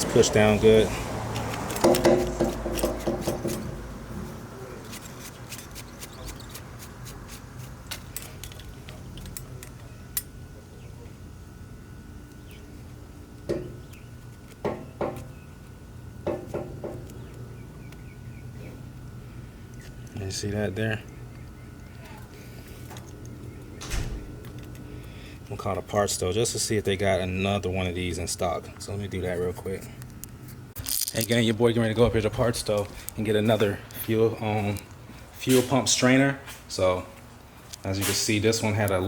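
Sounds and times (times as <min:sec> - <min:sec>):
parts clicking and clattering: 0:01.3 - 0:03.8, 0:07.8 - 0:10.3, 0:30.0 - 0:35.8
sharp knocks: 0:01.8 - 0:03.8.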